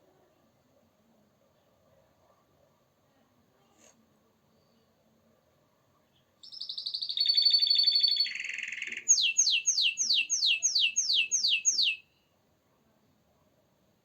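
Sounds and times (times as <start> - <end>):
canary singing: 6.4 - 12.1.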